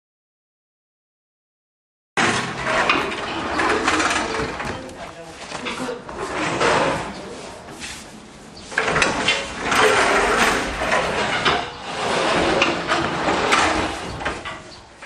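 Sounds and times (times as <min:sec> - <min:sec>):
mechanical clattering and knocking: 0:02.2 - 0:07.1, 0:08.7 - 0:14.8.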